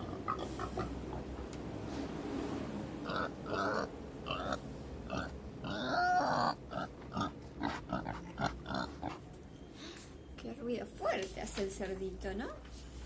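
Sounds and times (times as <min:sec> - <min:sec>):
pig grunting and oinking: 0:00.0 - 0:01.3, 0:03.0 - 0:09.2
pig squealing: 0:03.1 - 0:07.3.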